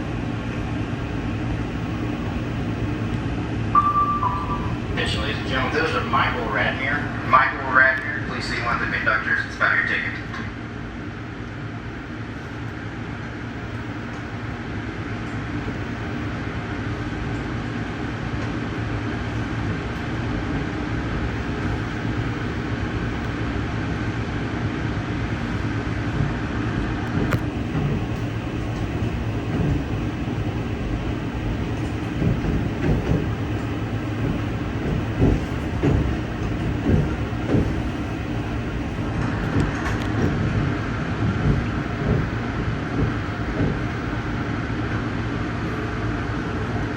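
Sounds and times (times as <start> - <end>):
train wheels rumbling on rail: 0.0 - 46.9
running gear knocks and clacks: 31.8 - 38.2, 39.0 - 43.9.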